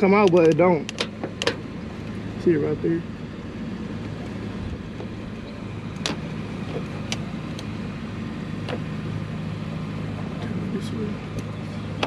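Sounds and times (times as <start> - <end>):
low engine hum: 0.0 - 12.0.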